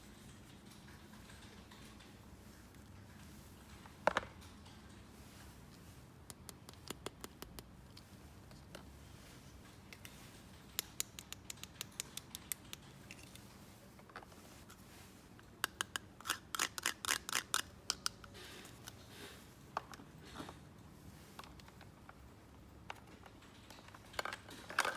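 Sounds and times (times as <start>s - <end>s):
toys clicking and tapping: 6.3s - 7.7s, 10.0s - 13.4s, 15.6s - 18.4s.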